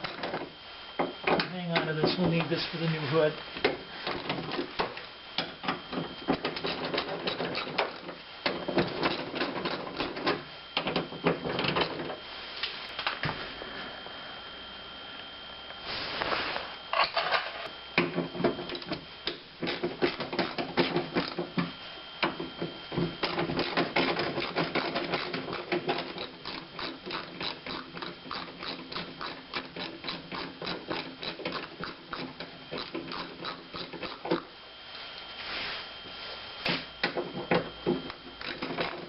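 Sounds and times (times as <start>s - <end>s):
ratchet clicking: 24.8s - 34.2s.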